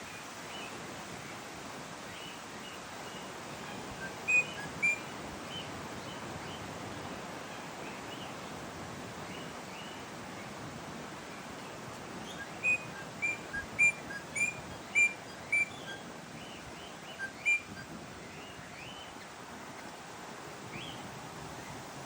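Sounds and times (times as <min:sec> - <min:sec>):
outdoor background noise: 0:00.0 - 0:22.0
bird piping calls: 0:03.1 - 0:06.6, 0:12.2 - 0:19.9
faint rising bird notes: 0:03.6 - 0:06.2, 0:12.2 - 0:19.2.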